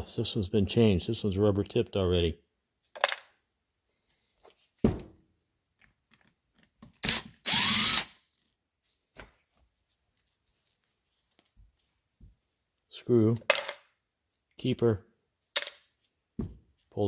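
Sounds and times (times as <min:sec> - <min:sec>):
small power tool burst: 0:07.0 - 0:08.2.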